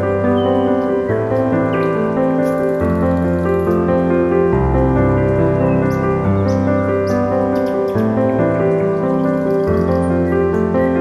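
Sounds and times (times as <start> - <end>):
soft sustained chords music: 0.0 - 11.0.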